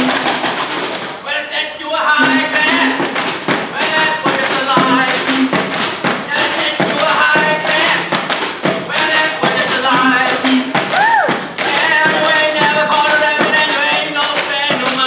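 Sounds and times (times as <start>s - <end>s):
pitched tones: 0.0s - 0.6s, 2.0s - 3.2s, 3.8s - 5.8s, 9.2s - 12.9s
tapping on objects as percussion: 0.0s - 15.0s.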